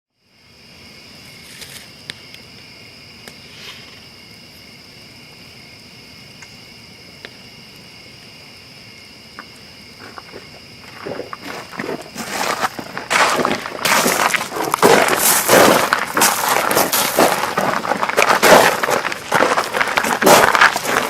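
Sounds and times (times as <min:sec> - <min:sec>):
crickets chirping: 0:00.1 - 0:21.0.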